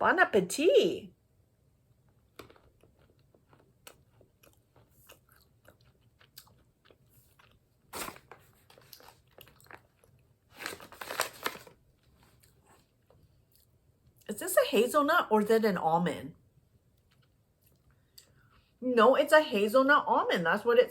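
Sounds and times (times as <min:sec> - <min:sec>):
crunching and chewing almonds: 0:01.9 - 0:14.3, 0:16.8 - 0:18.6.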